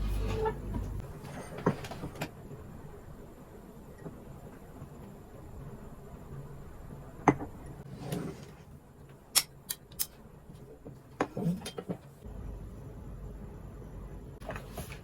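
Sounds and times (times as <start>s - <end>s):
steady low hum: 0.0s - 1.4s, 12.2s - 15.0s.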